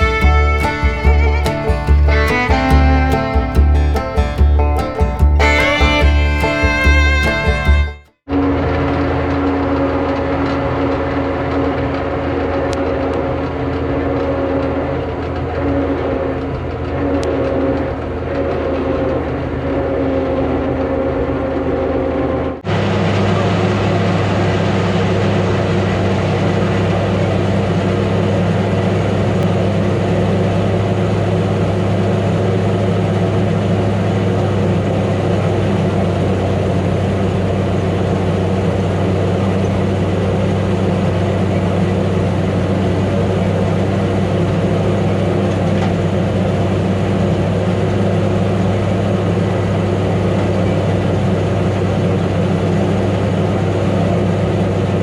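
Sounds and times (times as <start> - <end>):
combine engine drone: 8.6 - 55.0.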